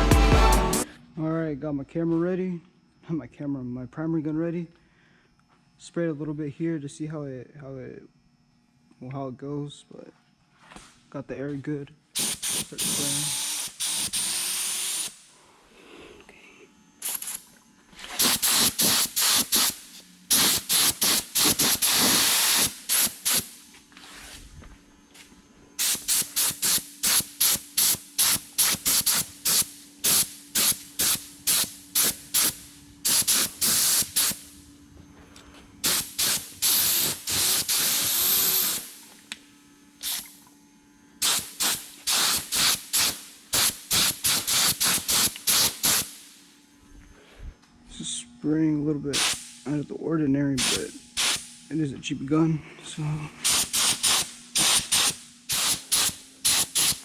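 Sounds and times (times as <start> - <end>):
faint steady hum: 2.6 - 12.2, 15.1 - 18.2
spray gun hissing: 12.2 - 15.2, 17.0 - 17.4, 18.0 - 24.4, 25.8 - 34.6, 35.8 - 39.2, 40.0 - 40.3, 41.2 - 46.4, 49.2 - 49.8, 50.6 - 51.6, 53.4 - 57.0.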